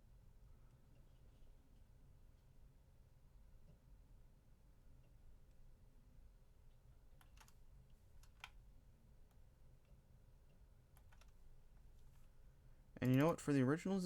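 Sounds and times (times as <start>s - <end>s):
faint keyboard clicking: 6.7s - 8.6s, 9.2s - 12.4s, 13.0s - 13.6s.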